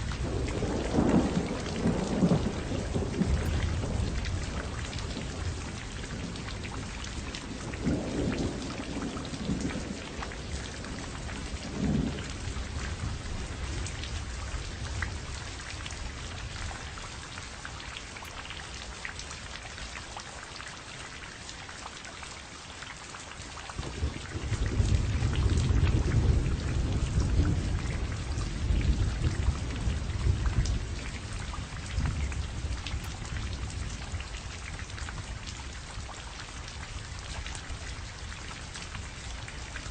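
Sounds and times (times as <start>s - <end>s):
rolling thunder: 0.0s - 16.9s, 23.8s - 36.1s
heavy rain: 0.0s - 39.9s.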